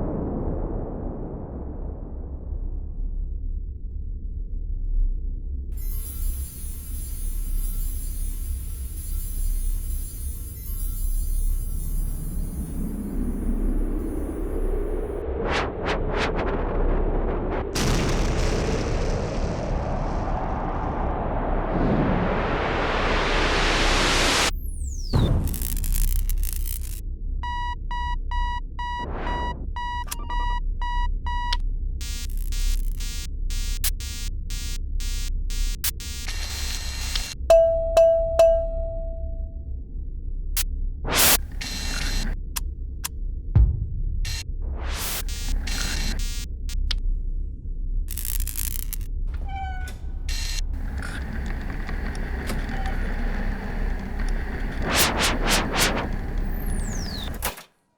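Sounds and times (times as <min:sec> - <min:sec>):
whoosh: 0:12.2 - 0:24.5, 0:54.4 - 0:57.4
white noise burst: 0:14.1 - 0:24.5, 0:49.4 - 0:57.5
electronic beeps: 0:27.4 - 0:39.4, 0:54.8 - 0:57.5
low electronic hum: 0:29.4 - 0:39.7
harsh buzzing pulses: 0:32.0 - 0:37.4
low hum: 0:37.4 - 0:45.5, 0:49.3 - 0:57.5.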